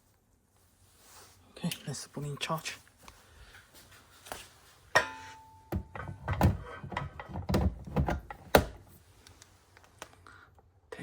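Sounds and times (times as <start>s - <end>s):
knocks and thumps: 5.7s - 8.8s.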